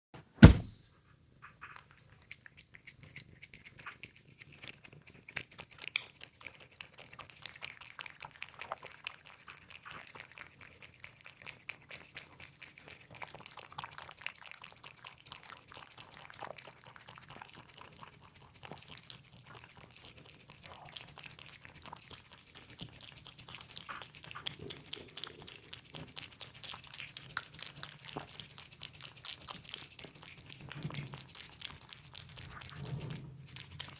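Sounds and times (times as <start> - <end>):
loud knock: 0.4 - 0.8
cat chewing food: 1.5 - 33.9.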